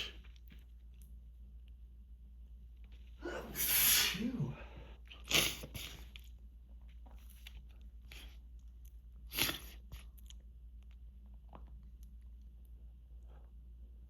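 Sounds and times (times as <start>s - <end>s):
person sneezing: 3.2s - 6.1s.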